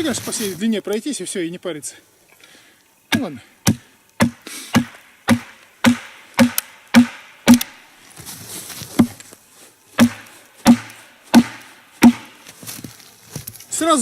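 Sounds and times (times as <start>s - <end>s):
wooden knocks driving wedge into log: 3.1s - 7.7s, 10.0s - 12.4s.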